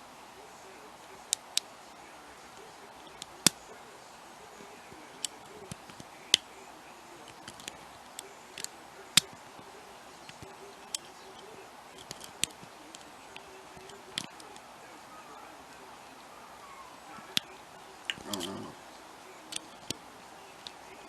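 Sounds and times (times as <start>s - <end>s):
lock pick clicking on pins: 12.0s - 13.0s, 18.1s - 18.6s.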